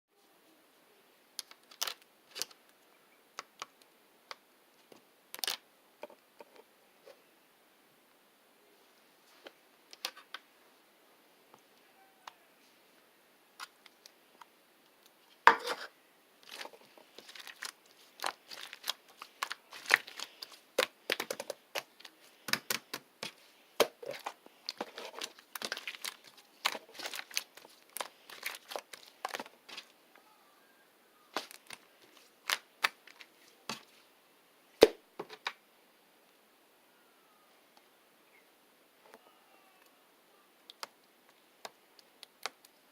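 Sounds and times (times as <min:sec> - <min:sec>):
slime popping and crackling: 0:16.4 - 0:29.9, 0:31.3 - 0:33.3.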